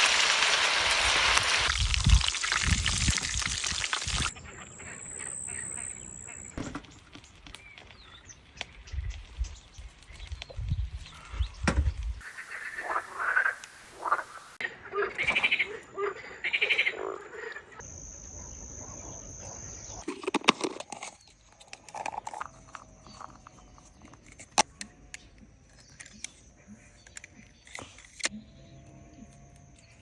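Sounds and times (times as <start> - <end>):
frogs croaking: 1.7 - 6.9, 11.2 - 20.1.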